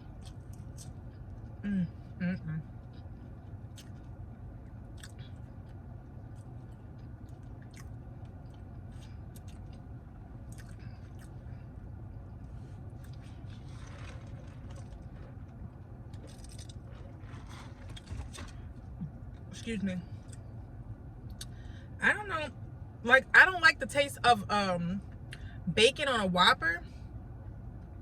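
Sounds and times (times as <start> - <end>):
person chewing food: 0.0 - 1.6, 2.8 - 19.4
steady low hum: 0.0 - 28.0.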